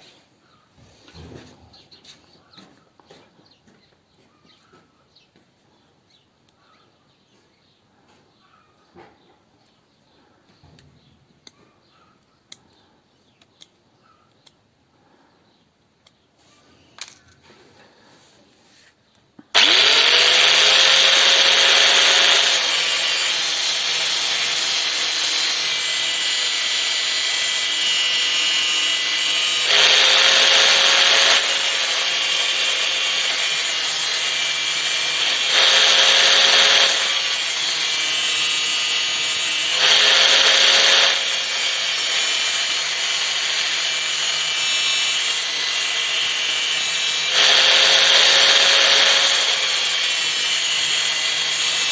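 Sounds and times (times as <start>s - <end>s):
power tool motor whine: 19.5s - 51.9s.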